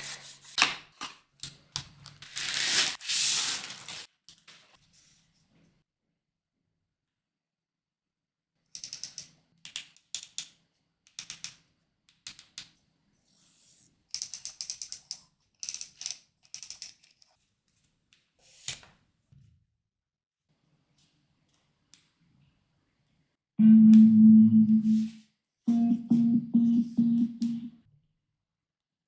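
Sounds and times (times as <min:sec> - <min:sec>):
cardboard and plastic rustling: 0:02.2 - 0:04.1.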